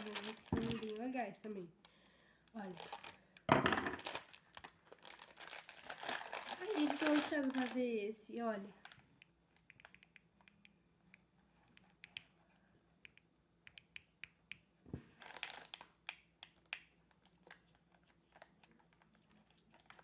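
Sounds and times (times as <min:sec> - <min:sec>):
packaging rustle: 0:00.0 - 0:01.1, 0:02.7 - 0:03.2, 0:04.0 - 0:07.8.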